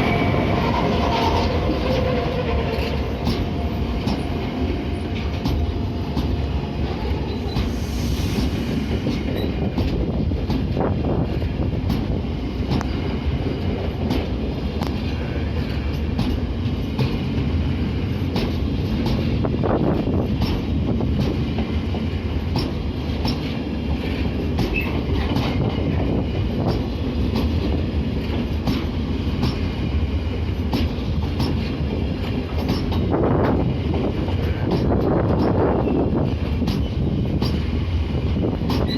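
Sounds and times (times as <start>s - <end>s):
freight train rumbling past: 0.0s - 38.9s
wheels clicking over rail joints: 18.2s - 29.7s, 30.5s - 33.7s, 34.3s - 37.7s, 38.5s - 38.9s.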